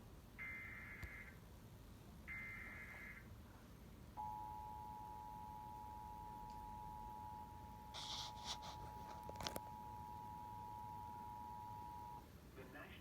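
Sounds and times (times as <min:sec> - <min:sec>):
steady two-tone attention signal: 0:09.7 - 0:12.2.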